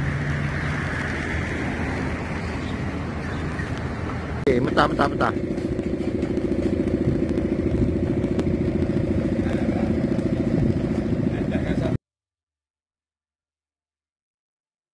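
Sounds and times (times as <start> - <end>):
engine idling: 4.4 - 12.0.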